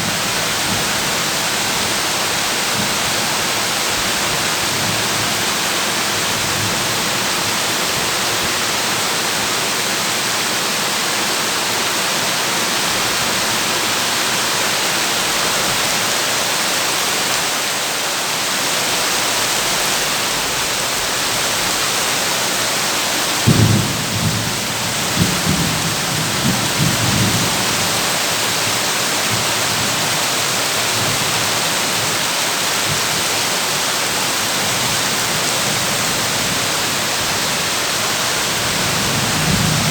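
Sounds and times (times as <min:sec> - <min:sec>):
heavy rain on a tin roof: 0:00.0 - 0:39.9
thunder rumbling: 0:23.2 - 0:27.9, 0:38.6 - 0:39.9.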